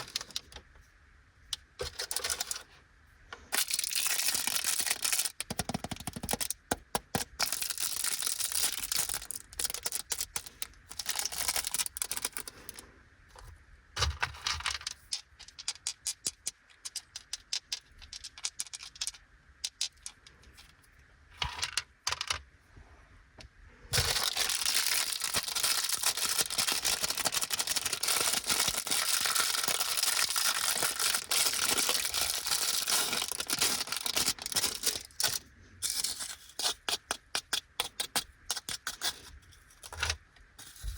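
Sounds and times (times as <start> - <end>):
snack bag crinkling: 0.0 - 0.5, 3.5 - 6.6, 7.2 - 12.8, 23.9 - 36.0
candy wrappers crinkling: 0.0 - 0.6, 1.8 - 2.6, 3.5 - 12.8, 23.9 - 37.2.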